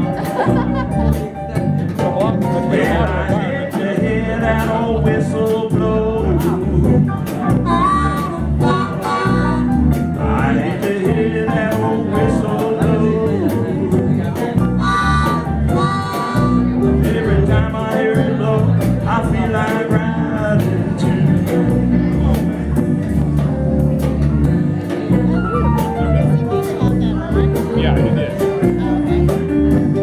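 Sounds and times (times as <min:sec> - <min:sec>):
guitar: 0:00.0 - 0:30.0
steady drum beat: 0:00.0 - 0:30.0
person singing: 0:02.5 - 0:22.2.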